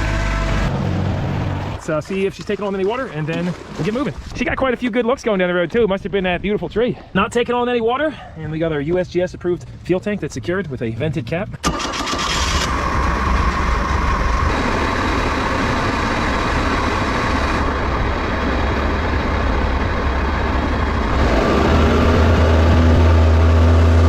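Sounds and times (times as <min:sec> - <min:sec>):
outboard motor drone: 0:00.0 - 0:01.8, 0:12.4 - 0:24.0
rushing water: 0:00.7 - 0:04.5.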